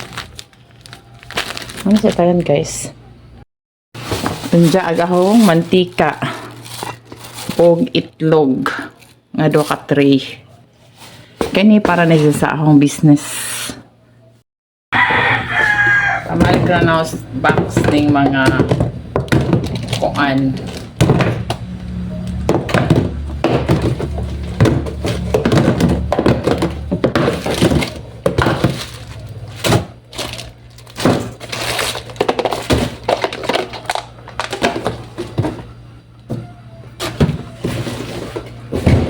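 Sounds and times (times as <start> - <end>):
packaging crackling and rustling: 0.0 - 2.5, 4.0 - 7.9, 18.6 - 21.1, 23.4 - 35.8.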